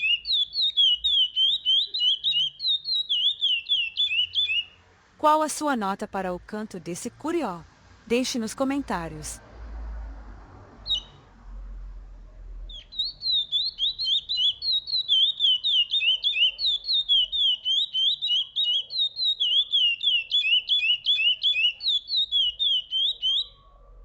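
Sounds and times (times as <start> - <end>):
bird whistling song: 0.0 - 4.7, 12.7 - 23.6.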